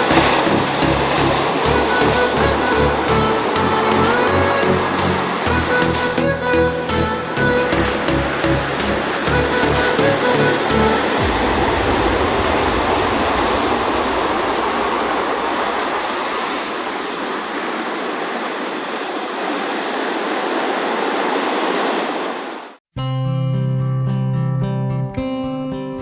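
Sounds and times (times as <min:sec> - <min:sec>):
acoustic guitar music: 0:00.0 - 0:11.3, 0:23.0 - 0:26.0
background music: 0:00.0 - 0:15.2
ocean waves breaking: 0:00.0 - 0:22.8.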